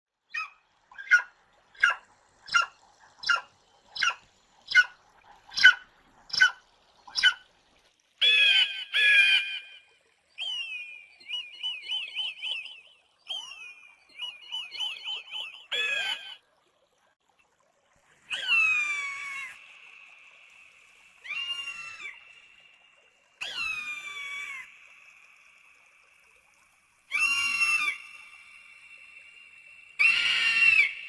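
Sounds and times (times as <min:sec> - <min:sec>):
eagle calling: 0:30.0 - 0:31.0.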